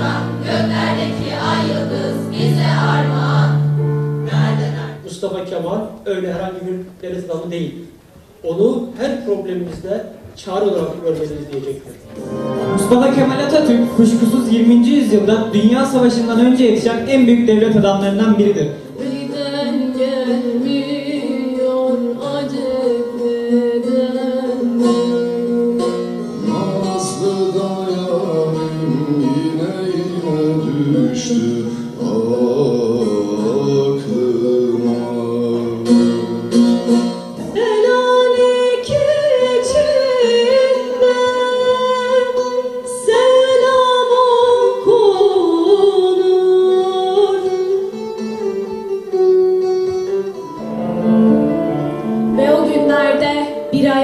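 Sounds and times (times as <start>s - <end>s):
plucked strings: 11.2s - 54.0s
person singing slow melody: 18.9s - 36.7s.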